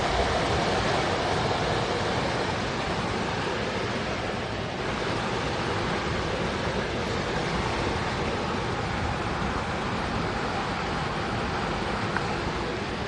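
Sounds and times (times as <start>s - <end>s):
stream water rushing: 11.4s - 13.0s.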